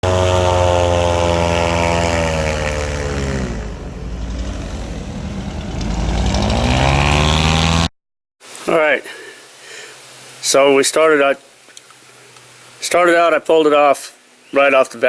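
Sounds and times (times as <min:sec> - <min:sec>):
airboat engine revving: 0:00.0 - 0:07.9.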